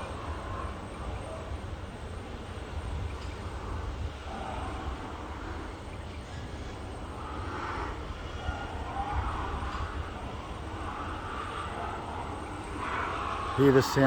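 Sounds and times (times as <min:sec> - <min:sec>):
steady low rumble: 0:00.0 - 0:14.0
pigs squealing: 0:07.3 - 0:14.0.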